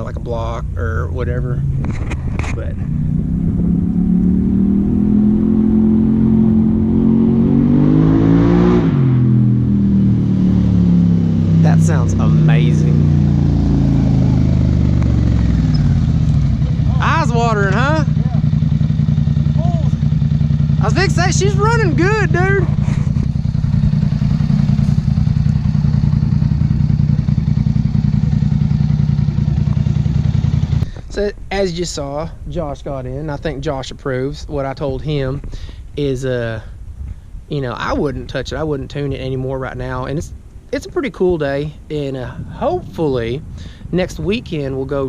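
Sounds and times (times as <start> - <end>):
atv engine accelerating: 0.0 - 31.6.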